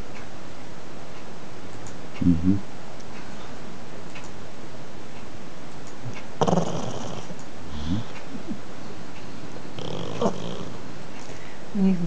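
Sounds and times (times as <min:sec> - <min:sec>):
steady background hiss: 0:00.0 - 0:12.0
dog snoring: 0:06.4 - 0:08.1, 0:09.8 - 0:10.8.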